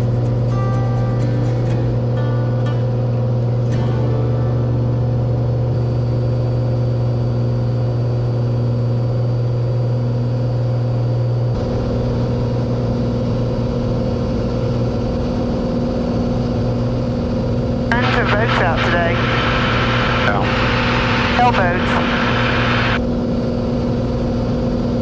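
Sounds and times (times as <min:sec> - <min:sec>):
propeller plane engine droning: 0:00.0 - 0:25.0.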